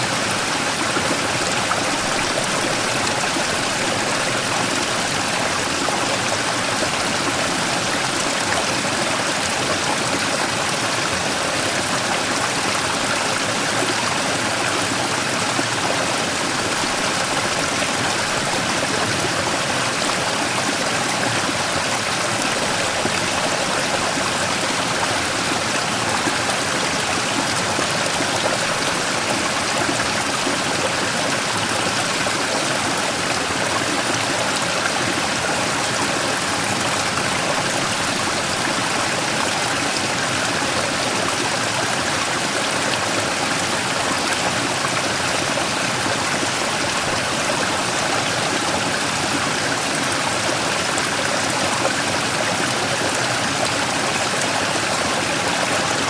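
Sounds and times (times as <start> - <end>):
stream rushing over rock: 0.0 - 56.0.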